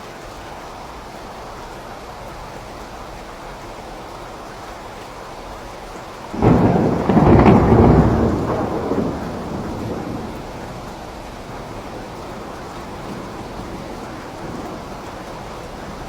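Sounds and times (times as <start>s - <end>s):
steady rain: 0.0s - 16.0s
thunder clap rumbling: 6.3s - 16.0s.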